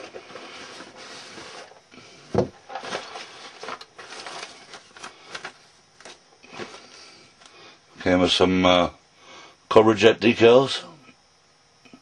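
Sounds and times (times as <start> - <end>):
plastic parts rubbing and rustling: 0.0 - 1.8, 2.5 - 6.9.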